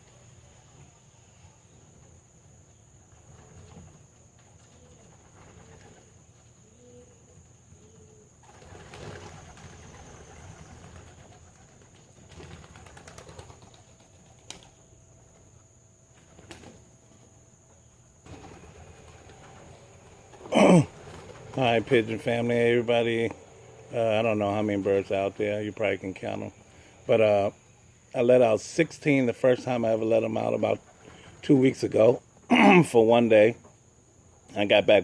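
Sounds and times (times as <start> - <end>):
pigeon wing flaps: 3.1 - 7.0, 7.9 - 14.8, 16.1 - 17.3, 18.3 - 22.5.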